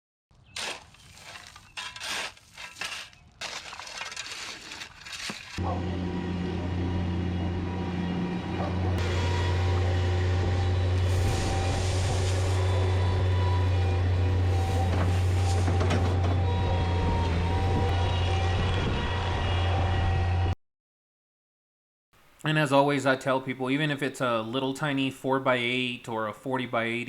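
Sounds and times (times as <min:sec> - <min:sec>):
machine engine humming: 0:05.6 - 0:20.6.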